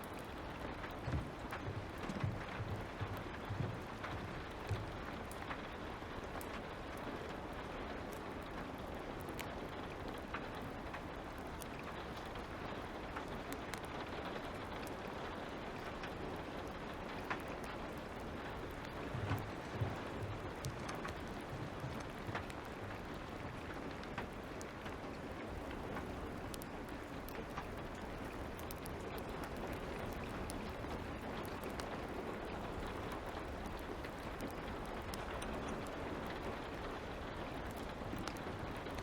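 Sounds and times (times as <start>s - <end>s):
light rain: 0.0s - 39.0s
wood fire crackling: 0.0s - 39.0s
soft low thumps: 1.0s - 5.0s, 19.0s - 22.5s.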